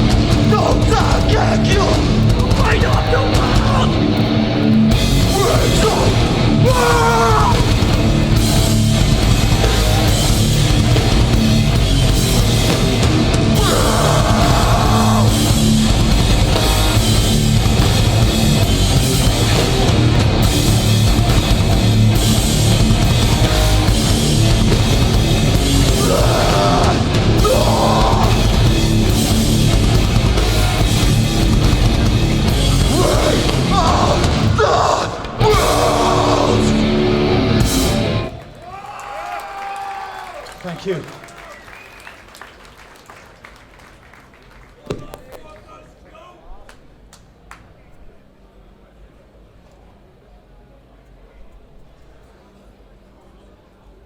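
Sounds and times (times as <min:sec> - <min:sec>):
shouted vocals: 0:00.0 - 0:04.0, 0:05.2 - 0:07.9, 0:13.4 - 0:15.8, 0:25.8 - 0:29.1, 0:32.8 - 0:37.4
hardcore band playing live: 0:00.0 - 0:34.6, 0:35.2 - 0:38.3.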